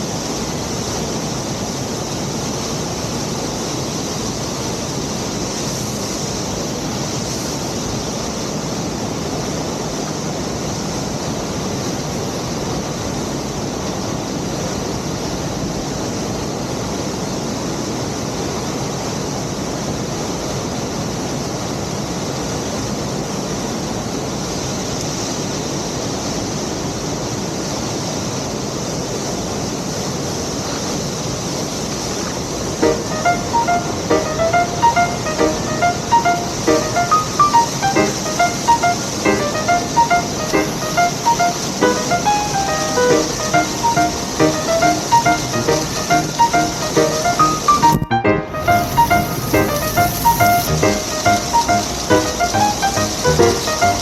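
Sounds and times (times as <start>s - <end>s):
waterfall rushing: 32.4s - 54.0s.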